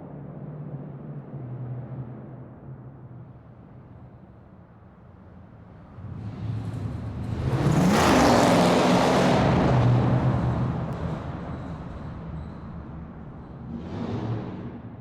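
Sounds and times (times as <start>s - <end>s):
car engine accelerating: 6.0s - 14.9s.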